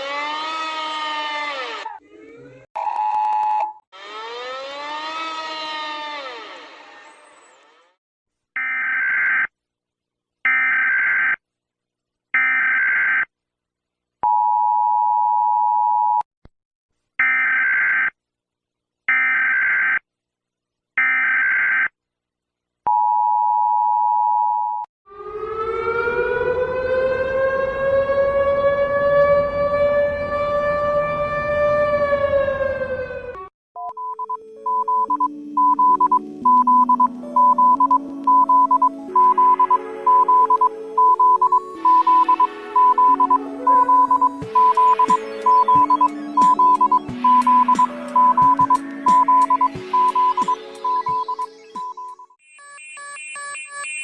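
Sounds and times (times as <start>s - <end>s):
civil defense siren wailing: 0.0s - 1.9s, 4.0s - 7.4s, 25.1s - 33.5s
emergency alert beeps: 33.8s - 54.0s.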